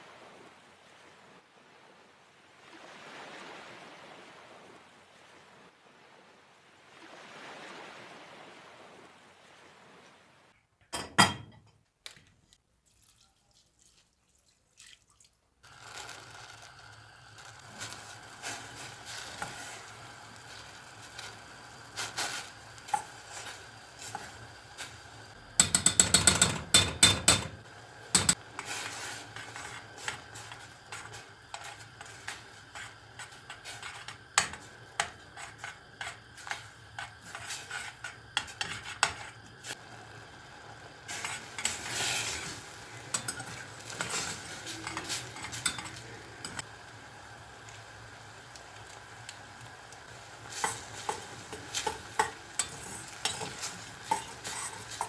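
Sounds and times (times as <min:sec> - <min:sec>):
stirring: 0:12.8 - 0:27.4, 0:28.1 - 0:39.8, 0:41.1 - 0:46.7, 0:50.2 - 0:55.0
metal utensil clinking on dishes: 0:43.1 - 0:44.2, 0:44.8 - 0:46.6.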